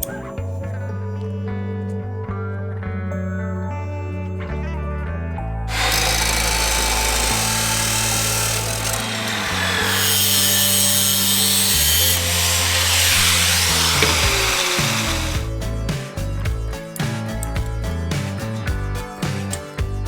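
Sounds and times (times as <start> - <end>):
background music with bass line: 0.0 - 20.0
power tool running: 5.7 - 15.6.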